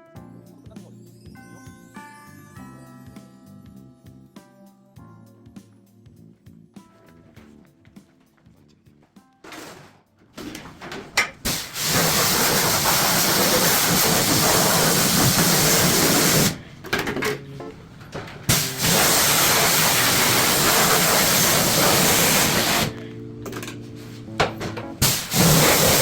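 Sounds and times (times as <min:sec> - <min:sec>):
cleaning sprayer hissing: 0:11.4 - 0:16.8, 0:18.5 - 0:23.0, 0:25.0 - 0:26.0.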